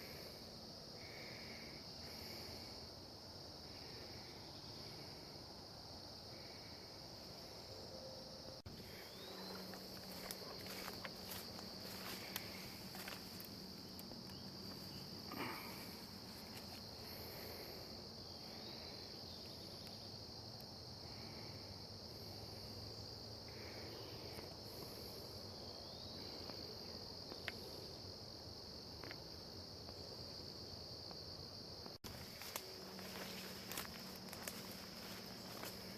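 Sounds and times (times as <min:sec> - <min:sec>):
insects droning: 0:00.0 - 0:35.9
faint rustles: 0:08.7 - 0:17.7, 0:32.0 - 0:35.9.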